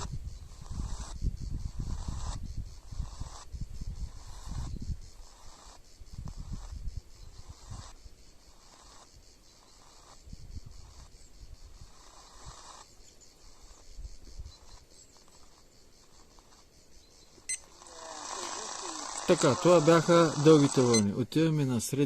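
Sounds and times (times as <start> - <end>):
static crackles: 17.4 - 21.2
radio receiver hiss: 17.4 - 21.9
morse code beacon tones: 18.5 - 21.2.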